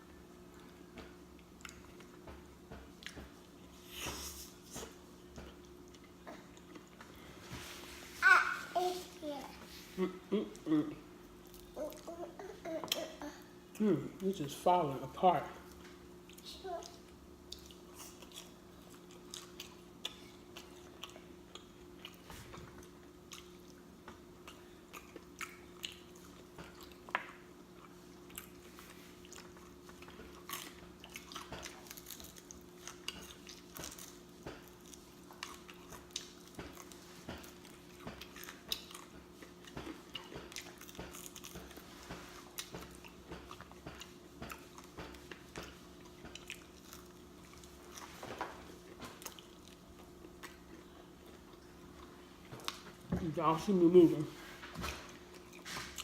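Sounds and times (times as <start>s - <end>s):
faint steady hum: 0.0s - 56.0s
person chewing and lip smacking: 0.6s - 2.3s, 16.2s - 48.1s, 48.8s - 53.0s.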